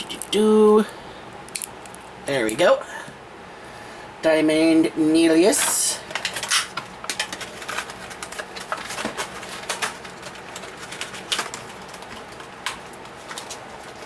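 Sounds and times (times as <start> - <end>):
plastic blister packaging crinkling: 5.3 - 14.0.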